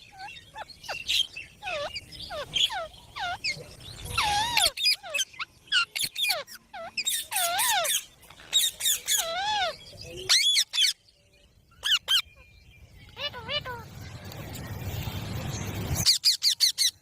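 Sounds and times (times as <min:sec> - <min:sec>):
parakeets squawking: 0:00.1 - 0:11.0, 0:11.8 - 0:12.4, 0:13.1 - 0:14.0, 0:15.8 - 0:17.0.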